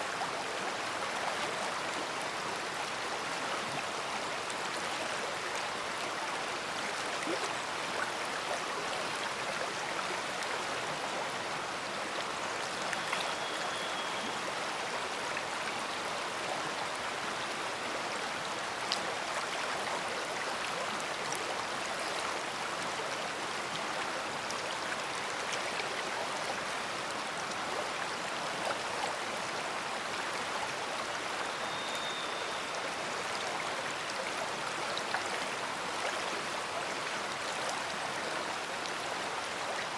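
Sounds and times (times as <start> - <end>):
river water rushing: 0.0 - 39.9
faint high whistles: 13.0 - 14.4, 31.4 - 32.8.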